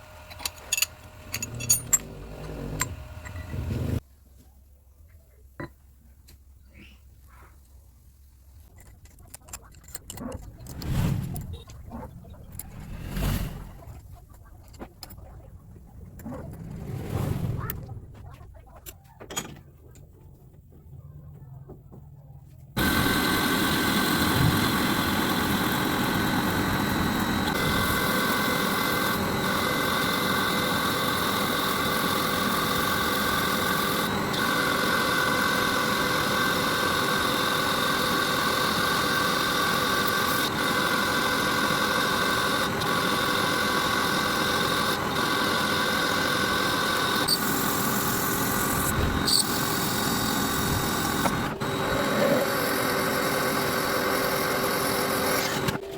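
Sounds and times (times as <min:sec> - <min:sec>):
power tool motor whining: 0:22.8 - 0:55.9.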